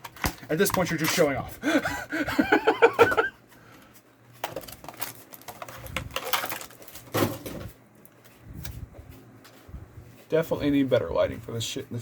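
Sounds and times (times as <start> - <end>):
person laughing: 1.6 - 3.4.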